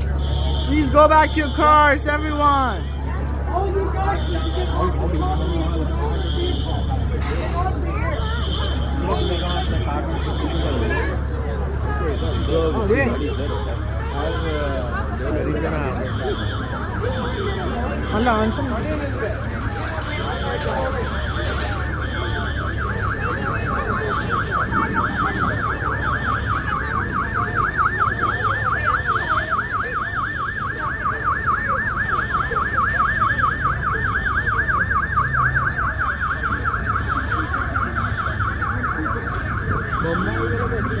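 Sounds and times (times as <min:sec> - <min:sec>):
fire alarm warbling tone: 0:20.1 - 0:41.0.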